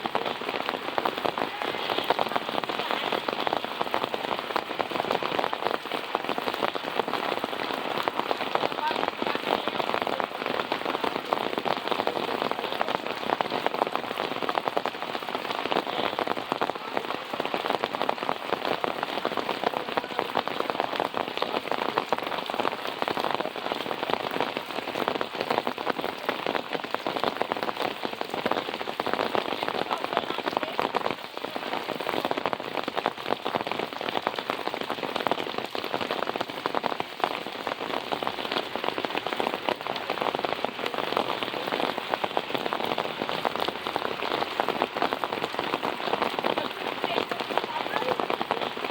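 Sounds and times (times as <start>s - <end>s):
steady rain falling: 0.0s - 48.9s.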